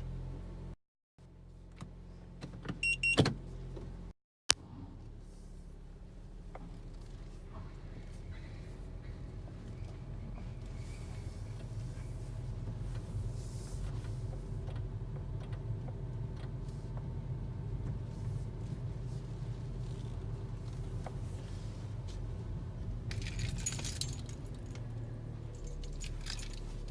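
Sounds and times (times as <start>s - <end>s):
car cabin low rumble: 0.0s - 26.9s
loud jangling rattle: 23.1s - 24.9s, 25.6s - 26.9s
light clicks and rattles: 23.1s - 26.9s.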